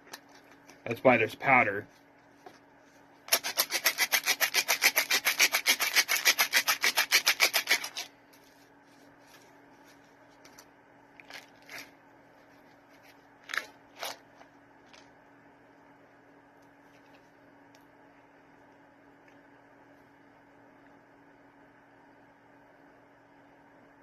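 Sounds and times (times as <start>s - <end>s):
plastic jug shaken rattling: 3.3s - 8.1s.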